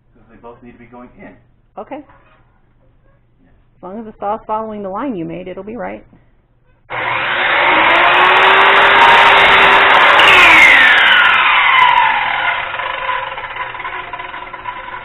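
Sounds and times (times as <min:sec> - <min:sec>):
radial arm saw cutting wood: 0:06.9 - 0:15.0.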